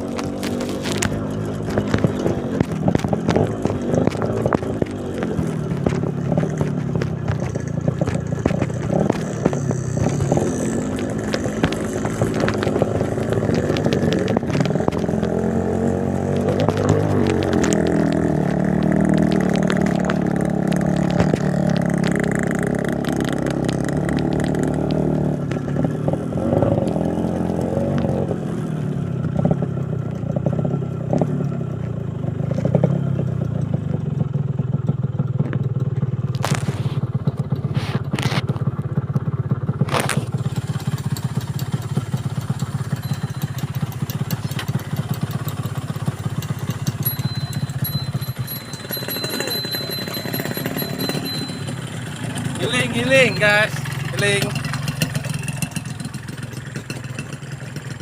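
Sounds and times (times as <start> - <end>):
loose stones clattering: 0.0 - 25.8
motorcycle engine running: 0.0 - 58.0.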